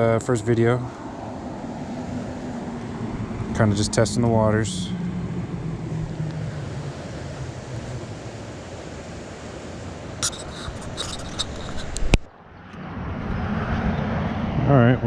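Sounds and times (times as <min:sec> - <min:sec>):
wind noise on microphone: 0:00.9 - 0:15.0
sharp clicks and light knocks: 0:10.2 - 0:12.3.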